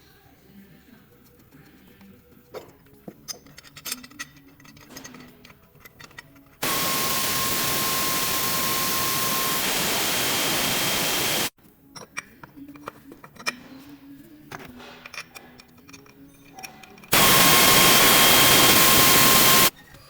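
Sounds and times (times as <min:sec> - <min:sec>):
small tools clicking and tapping: 0:01.2 - 0:06.6, 0:11.8 - 0:13.9, 0:14.5 - 0:17.2
loud steady hiss with whistle: 0:06.6 - 0:11.5, 0:17.1 - 0:19.7.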